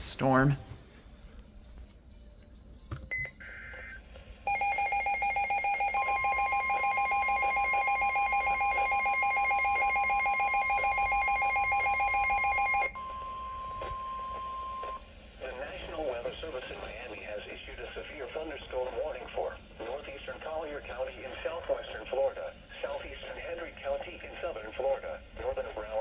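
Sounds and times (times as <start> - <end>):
rapidly pulsing alarm tone: 4.5 - 14.8.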